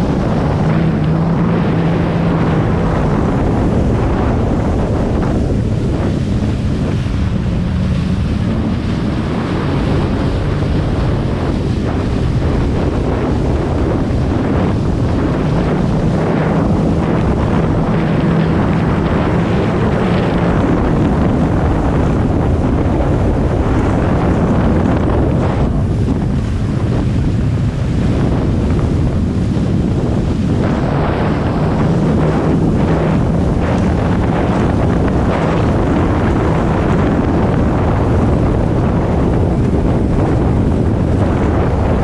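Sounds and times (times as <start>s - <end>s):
jet ski engine: 0.0s - 42.0s
water rushing: 0.0s - 42.0s
wind buffeting microphone: 0.0s - 42.0s.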